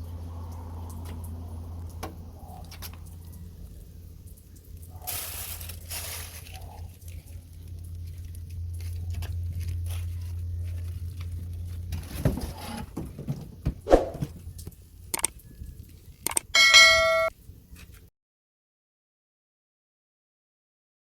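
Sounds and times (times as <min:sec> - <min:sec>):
objects being handled: 0:05.4 - 0:14.7
low hum: 0:13.8 - 0:17.3.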